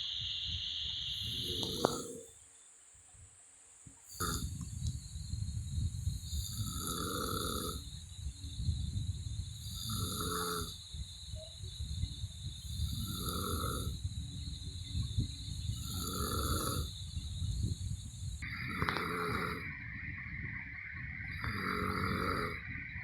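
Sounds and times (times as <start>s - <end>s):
woman snoring: 1.2s - 2.3s, 4.1s - 4.6s, 6.2s - 7.8s, 9.6s - 10.8s, 12.6s - 14.0s, 15.8s - 17.0s, 18.5s - 19.7s, 21.3s - 22.7s.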